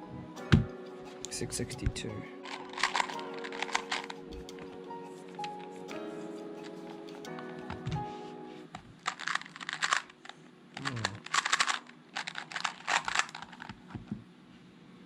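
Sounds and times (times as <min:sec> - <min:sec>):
speed cube turning clicks: 0:02.5 - 0:04.1, 0:09.1 - 0:14.0.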